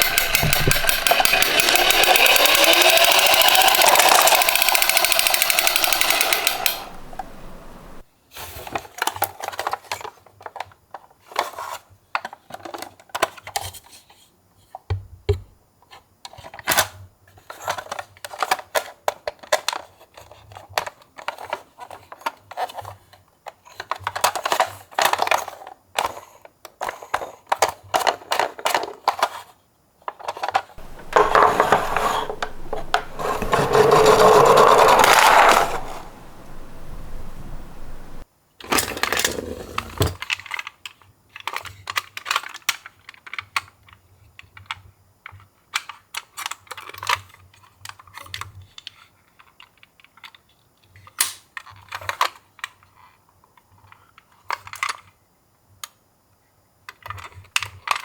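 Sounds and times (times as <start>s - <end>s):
plastic toy clicks and clatters: 0.0s - 6.9s, 30.1s - 36.1s, 38.7s - 53.1s, 53.8s - 55.2s, 56.9s - 58.0s
rolling scraping noise: 0.0s - 8.0s, 30.8s - 38.2s.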